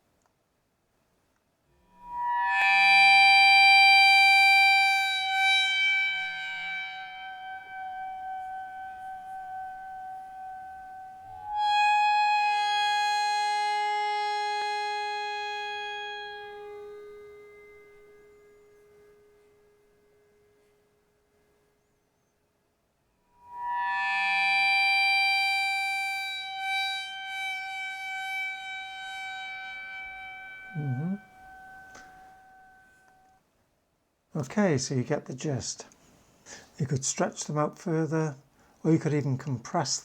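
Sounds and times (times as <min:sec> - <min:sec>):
sustained ringing tones: 0:25.4 - 0:33.4.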